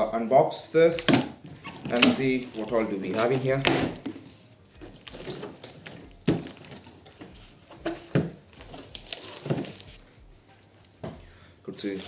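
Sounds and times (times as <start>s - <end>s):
cardboard box rustling and scraping: 0.9s - 10.4s.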